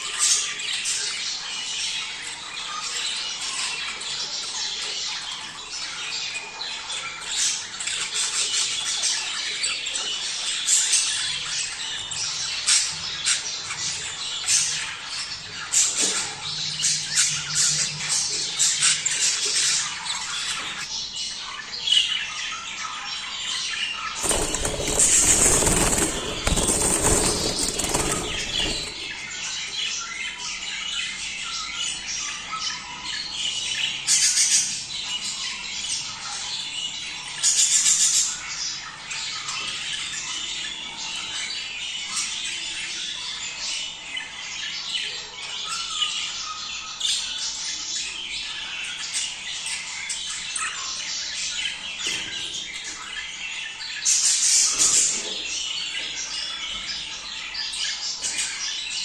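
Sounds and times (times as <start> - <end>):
loud rustling bursts: 24.2 - 29.3.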